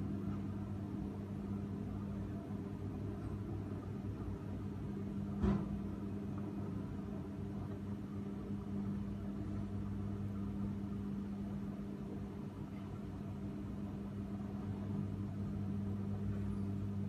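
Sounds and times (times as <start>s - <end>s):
machine humming steadily: 0.0s - 17.0s.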